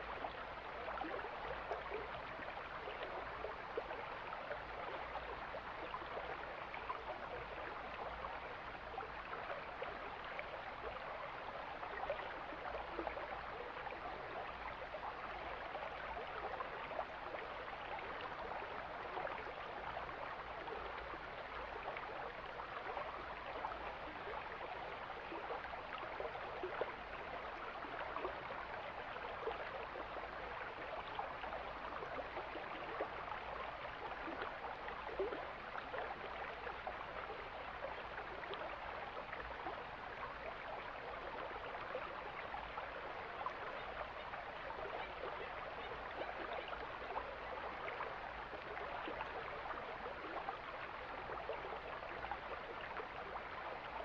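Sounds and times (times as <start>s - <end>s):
small water splashes: 16.2s - 54.0s.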